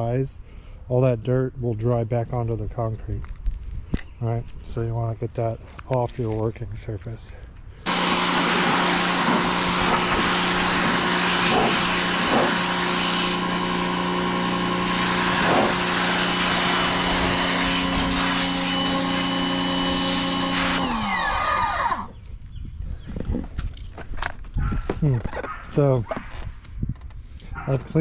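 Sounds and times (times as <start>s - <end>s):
water jet hissing: 7.9s - 20.8s
pressure washer motor humming: 7.9s - 22.2s.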